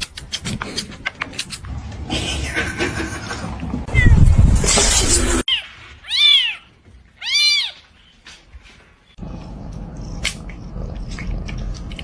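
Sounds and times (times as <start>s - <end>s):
cat meowing: 5.5s - 7.8s
low rumble: 9.2s - 12.0s.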